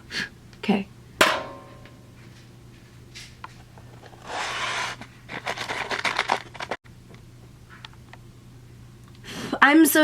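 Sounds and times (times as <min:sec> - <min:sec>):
rasping scrape: 0:04.2 - 0:05.0.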